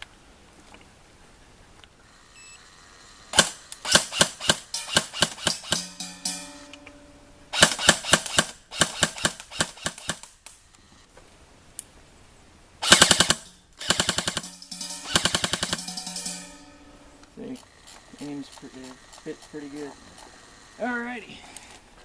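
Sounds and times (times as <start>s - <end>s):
airsoft rifle firing bursts: 3.4s - 6.0s, 7.5s - 10.4s, 12.8s - 16.5s.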